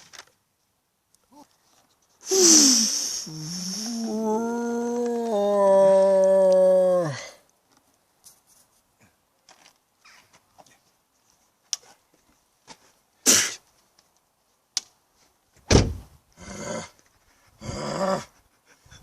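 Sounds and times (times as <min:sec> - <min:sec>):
short hiss: 0:02.2 - 0:04.0, 0:13.2 - 0:13.6
drawn-out wordless cries: 0:02.2 - 0:07.4
loud thump: 0:15.7 - 0:16.1.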